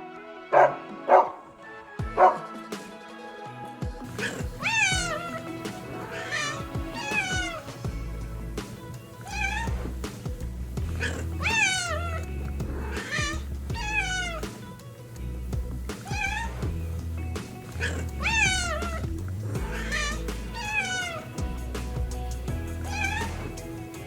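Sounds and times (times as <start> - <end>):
background music with bass line: 0.0 - 24.0
cat meowing: 9.3 - 9.7, 13.0 - 14.4, 16.1 - 16.6, 22.8 - 23.5.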